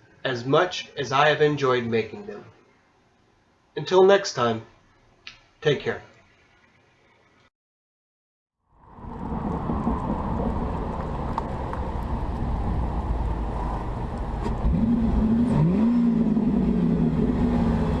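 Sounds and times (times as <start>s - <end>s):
car engine rumbling: 8.8s - 18.0s.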